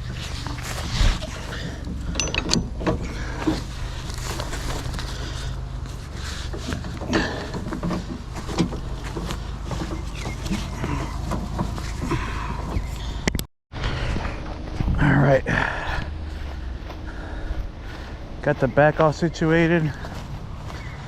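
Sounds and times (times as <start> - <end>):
steady low hum: 0.0 - 21.0
rigging gear knocks and clinks: 1.3 - 13.0.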